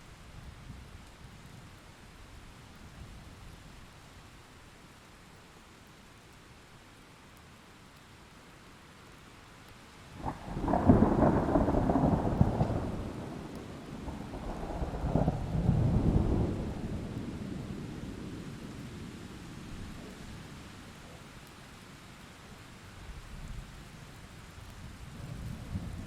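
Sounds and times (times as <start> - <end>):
rain hiss: 0.0 - 26.0
thunder crack and rumble: 10.2 - 20.2, 25.1 - 26.0.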